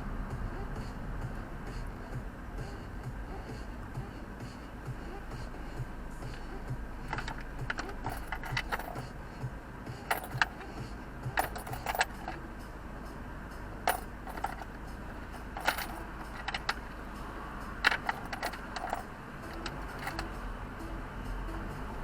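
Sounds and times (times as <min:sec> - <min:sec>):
steady low hum: 0:00.0 - 0:22.0
small hard objects clinking: 0:07.0 - 0:09.1, 0:10.1 - 0:12.4, 0:13.8 - 0:16.9, 0:17.8 - 0:20.3.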